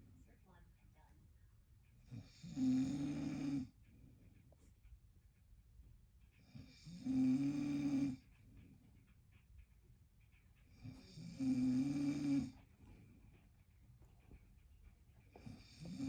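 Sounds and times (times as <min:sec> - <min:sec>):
man snoring: 0:02.2 - 0:03.7, 0:06.8 - 0:08.2, 0:11.1 - 0:12.6, 0:15.6 - 0:16.0.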